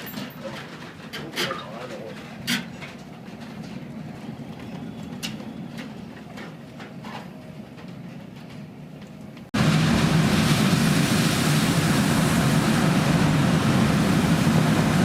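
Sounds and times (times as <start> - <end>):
steady low machine drone: 9.6 - 15.0.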